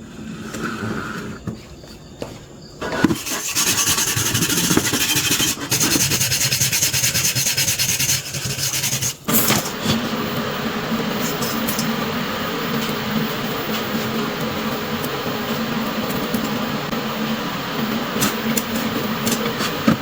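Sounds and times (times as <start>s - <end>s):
file rasping on a surface: 2.8s - 9.3s
steady machine hum: 9.2s - 20.0s.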